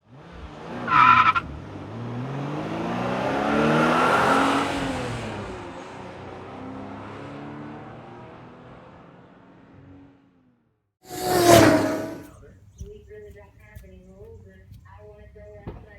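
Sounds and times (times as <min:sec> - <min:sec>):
car engine revving: 0:00.0 - 0:10.2, 0:11.1 - 0:12.4
high-pitched squeal: 0:11.1 - 0:12.3.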